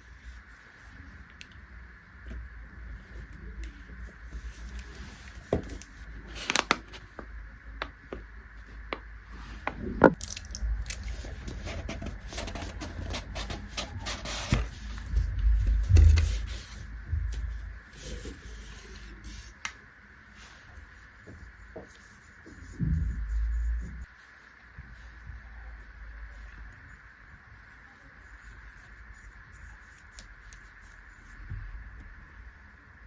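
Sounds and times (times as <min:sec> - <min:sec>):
scraping and squishing: 0:08.7 - 0:20.6.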